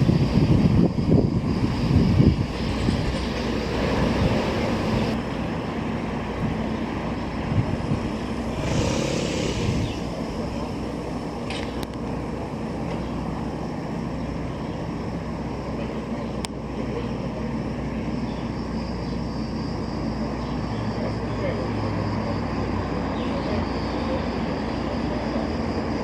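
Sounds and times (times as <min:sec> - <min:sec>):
ship engine rumble: 0:00.0 - 0:21.1
brief hiss: 0:08.5 - 0:10.2.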